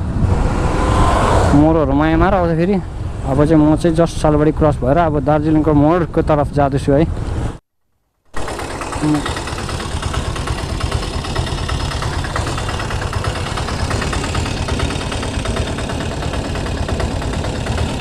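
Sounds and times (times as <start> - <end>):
motorcycle engine running: 8.4 - 18.0.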